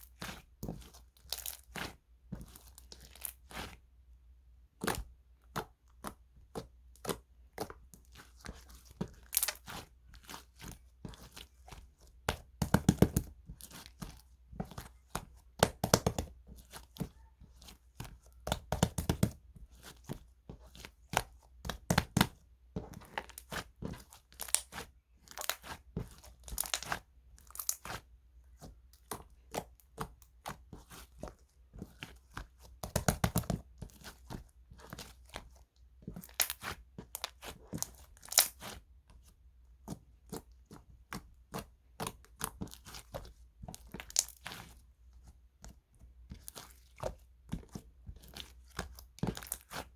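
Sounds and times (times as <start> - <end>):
slime squished by hand: 41.5 - 44.8.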